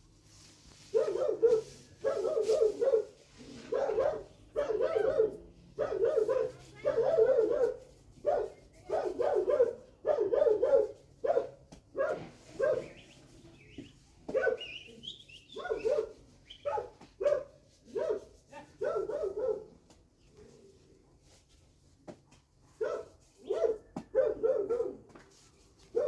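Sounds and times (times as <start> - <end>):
dog barking: 0.9 - 13.0, 14.3 - 14.8, 15.5 - 19.8, 22.8 - 25.0.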